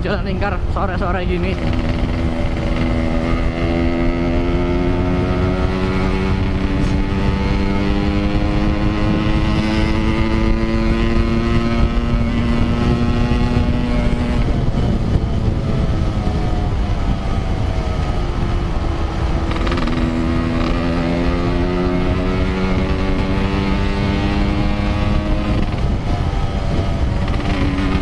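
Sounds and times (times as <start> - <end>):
two-stroke motorcycle engine revving: 1.4 - 28.0.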